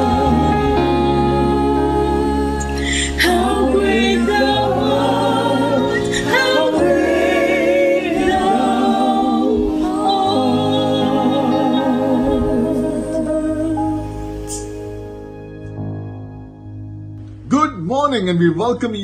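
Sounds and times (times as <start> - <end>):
voices singing with vibrato: 0.0 - 14.6
held low chords: 0.0 - 18.4.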